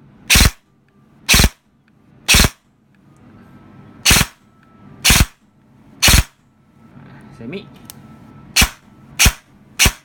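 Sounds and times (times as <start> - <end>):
airsoft gun shots: 0.3 - 0.6, 1.3 - 1.6, 2.3 - 2.6, 4.1 - 4.4, 5.0 - 5.4, 6.0 - 6.3, 8.6 - 10.0.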